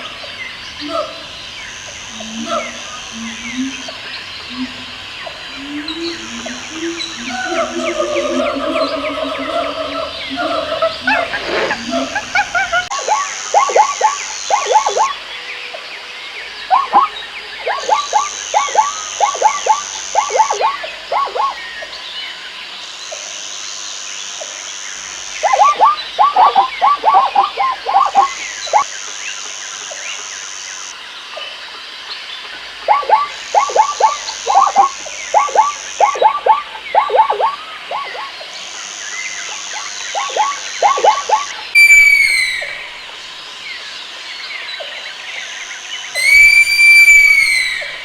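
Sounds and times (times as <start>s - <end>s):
high buzz: 0.0s - 15.3s, 16.6s - 21.6s, 32.9s - 43.5s, 46.1s - 48.0s
rapid falling animal calls: 0.0s - 15.3s, 16.6s - 21.8s, 25.3s - 28.9s, 32.8s - 43.4s, 46.1s - 48.0s
loud arching animal call: 0.0s - 15.5s, 16.6s - 21.7s, 25.0s - 28.8s, 32.8s - 38.8s, 39.4s - 43.4s, 46.1s - 48.0s.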